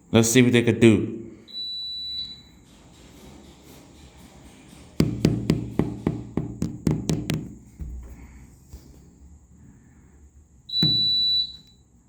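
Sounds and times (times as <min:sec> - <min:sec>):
sharp knocks with low thuds: 0:05.0 - 0:08.1.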